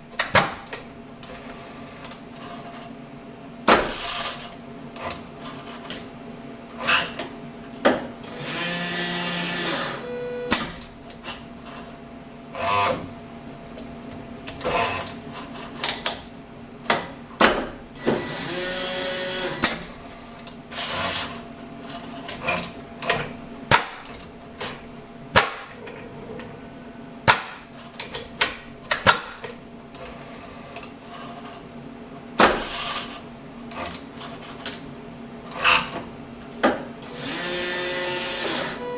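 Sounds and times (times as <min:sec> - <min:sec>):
noisy machine bursts: 0:08.2 - 0:10.9, 0:18.0 - 0:20.1, 0:37.1 - 0:38.9
milling machine hum: 0:08.2 - 0:11.1, 0:17.8 - 0:28.1, 0:37.1 - 0:38.9.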